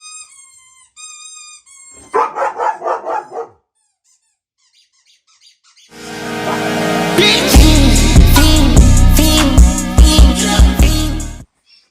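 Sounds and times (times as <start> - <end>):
dog whining: 0.0 - 5.9
dog barking: 2.0 - 3.6
music: 6.0 - 11.4.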